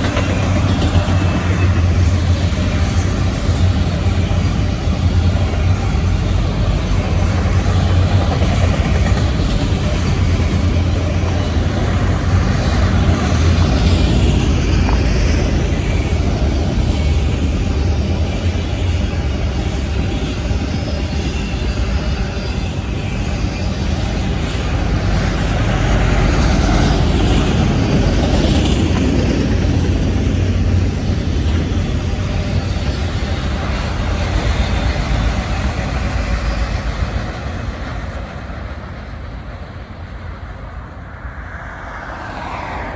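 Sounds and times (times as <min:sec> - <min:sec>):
train rumbling past: 0:00.0 - 0:42.9.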